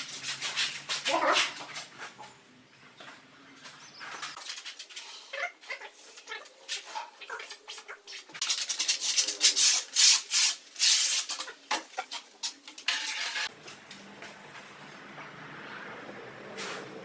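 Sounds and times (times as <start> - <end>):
gritty scraping strokes: 0.0 - 2.2, 3.6 - 13.6.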